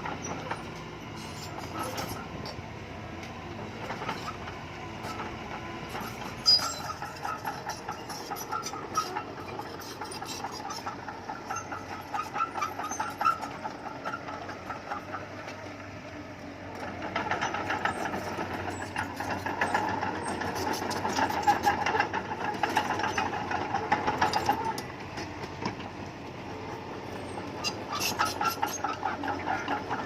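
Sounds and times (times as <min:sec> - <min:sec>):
bulldozer diesel engine running: 0:00.0 - 0:30.0
metal clanks and rattles: 0:16.9 - 0:25.9.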